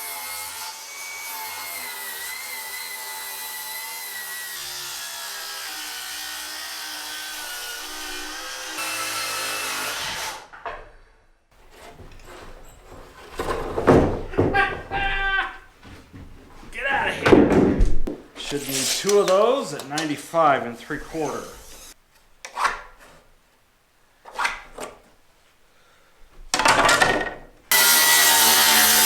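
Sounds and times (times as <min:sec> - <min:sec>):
saw blade cutting wood: 0:00.0 - 0:10.5, 0:18.4 - 0:22.8, 0:27.7 - 0:29.0.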